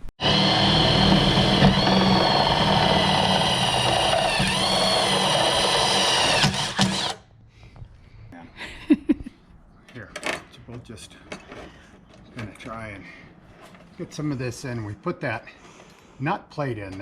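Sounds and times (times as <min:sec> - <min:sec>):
electric drill drilling into metal: 0:00.2 - 0:07.2.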